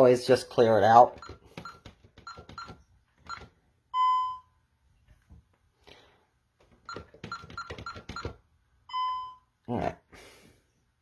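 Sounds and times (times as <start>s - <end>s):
keypad key-press beeps: 1.1s - 4.4s, 6.8s - 9.4s
long clear beep: 3.9s - 4.6s, 8.9s - 9.5s.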